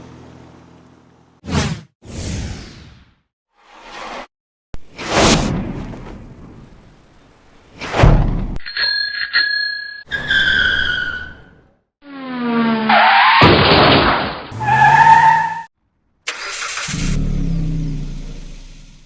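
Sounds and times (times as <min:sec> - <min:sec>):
ringing tone: 0:08.6 - 0:10.1.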